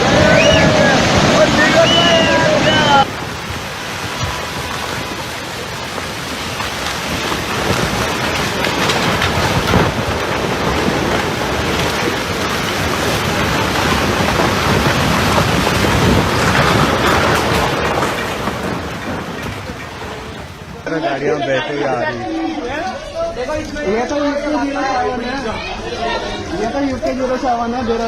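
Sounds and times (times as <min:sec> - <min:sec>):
heavy rushing water: 0:00.0 - 0:21.6.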